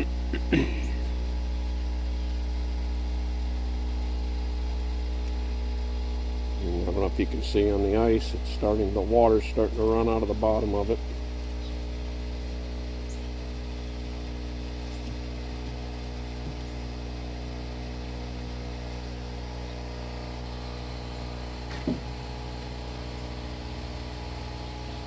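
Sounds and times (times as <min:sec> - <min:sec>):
heat pump humming: 0:00.0 - 0:25.0
short knock: 0:21.7 - 0:22.1.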